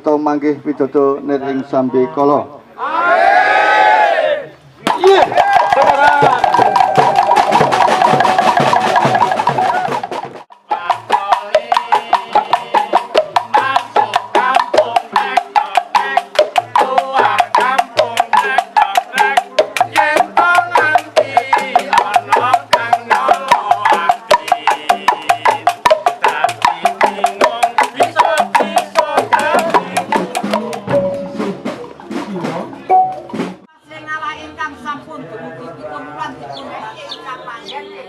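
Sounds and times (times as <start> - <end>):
fast percussive music: 4.8 - 33.7
held pitched music passage: 4.9 - 18.2.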